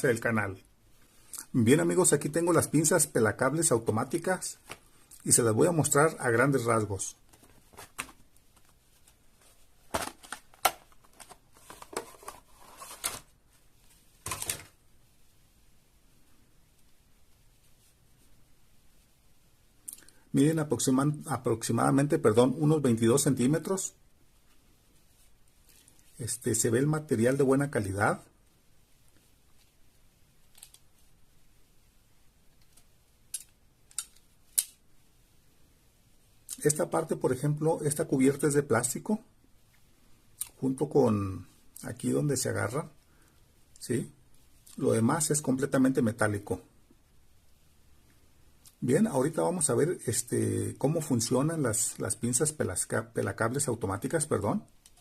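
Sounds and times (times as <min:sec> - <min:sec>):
rustling: 0:07.1 - 0:15.4, 0:24.3 - 0:26.2.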